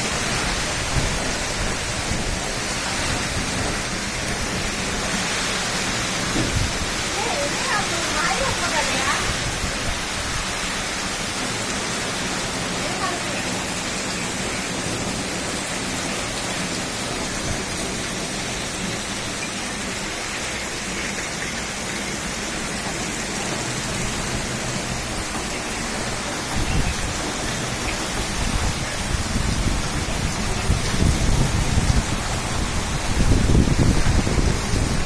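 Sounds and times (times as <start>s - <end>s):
wind gusts rumbling: 0.0s - 11.5s, 21.9s - 35.0s
heavy rain hissing: 0.0s - 35.0s.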